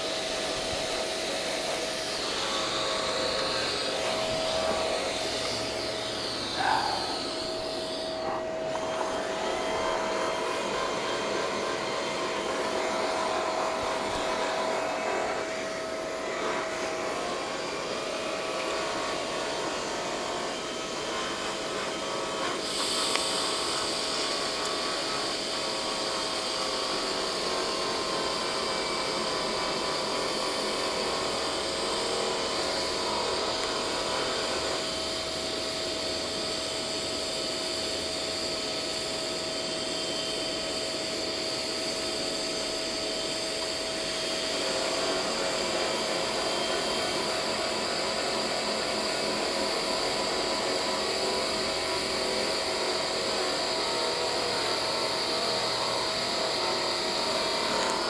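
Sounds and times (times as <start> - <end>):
machine whirring hum: 0.0 - 58.0
high-pitched hiss: 22.6 - 23.8.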